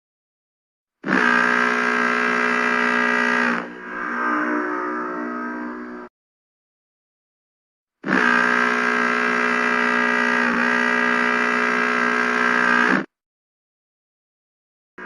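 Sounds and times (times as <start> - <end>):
horn long steady blast: 1.1 - 6.1.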